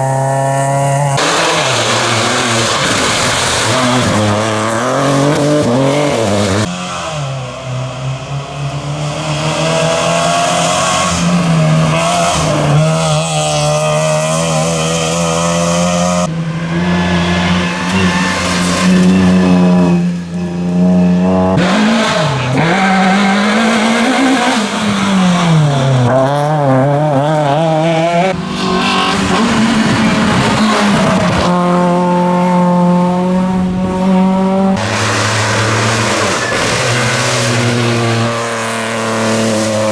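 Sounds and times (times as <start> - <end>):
rally car engines revving: 0.0 - 39.9.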